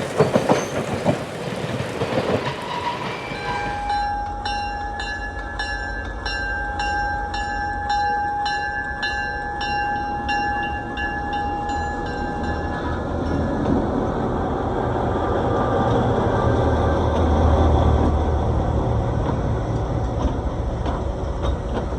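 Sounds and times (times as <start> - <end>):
diesel locomotive engine rumble: 0.0 - 21.9
bell ringing: 3.3 - 13.7.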